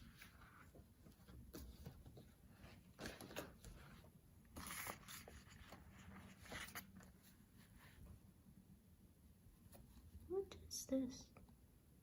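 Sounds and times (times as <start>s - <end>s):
paper sheets rustling: 0.0s - 8.0s.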